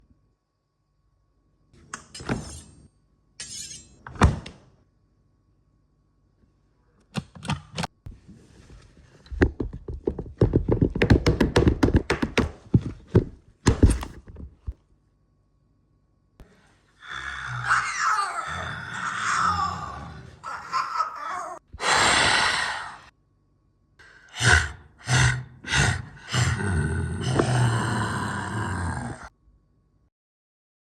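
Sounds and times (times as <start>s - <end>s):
knocks and thuds: 9.3s - 14.8s
rapid taps: 9.6s - 13.3s.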